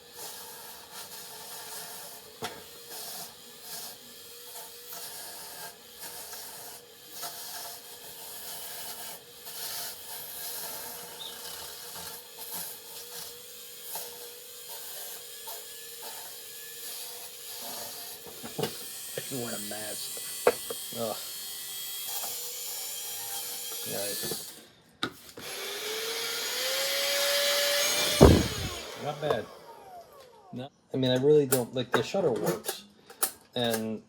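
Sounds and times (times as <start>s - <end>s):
rotary tool motor whine: 0.0s - 30.6s
rotary bit scraping metal: 0.2s - 24.6s.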